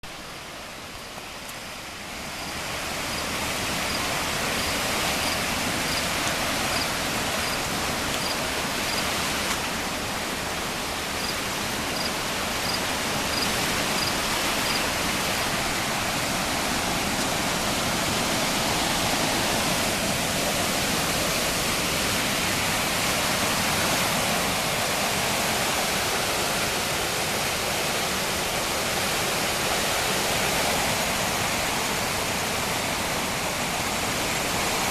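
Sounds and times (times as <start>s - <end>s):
river water rushing: 0.0s - 34.9s.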